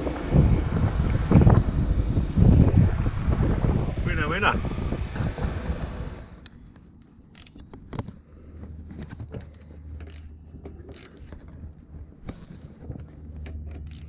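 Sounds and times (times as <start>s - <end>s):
low hum: 0.0s - 9.1s
metallic clicks of hand tools: 9.5s - 11.4s, 13.4s - 14.0s.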